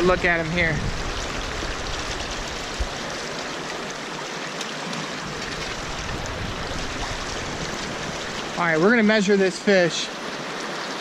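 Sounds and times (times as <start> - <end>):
water rushing over rocks: 0.0 - 11.0
low rumble: 5.3 - 8.6.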